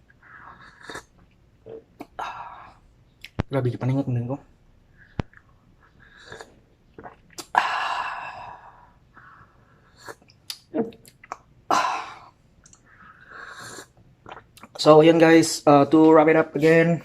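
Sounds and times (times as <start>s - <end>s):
mouth and lip clicks: 3.2s - 3.5s, 10.0s - 11.5s, 12.6s - 12.9s.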